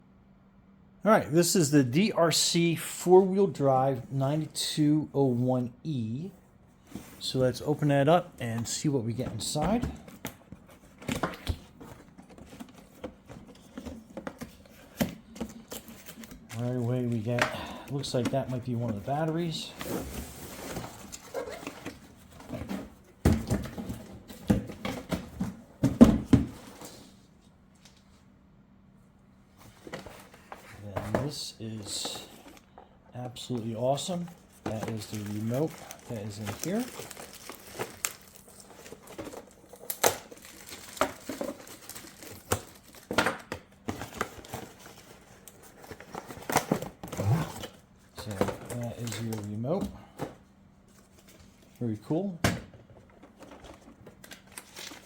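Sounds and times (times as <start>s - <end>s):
packaging rustling and crinkling: 33.4s - 49.6s, 53.0s - 55.0s
packaging crackles and clicks: 35.0s - 43.2s.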